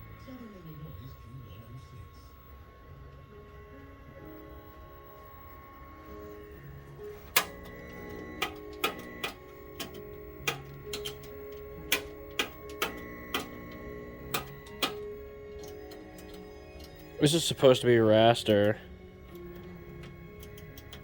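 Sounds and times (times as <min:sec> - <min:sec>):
faint steady tones: 0:00.0 - 0:21.0
sharp irregular clicks: 0:07.4 - 0:17.1, 0:18.6 - 0:21.0.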